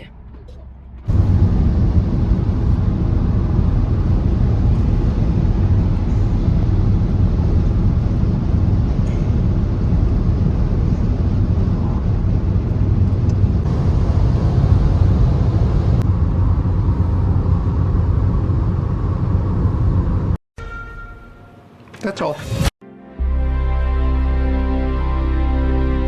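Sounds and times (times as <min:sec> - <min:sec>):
car tyres and engine rumble: 0:00.0 - 0:20.4.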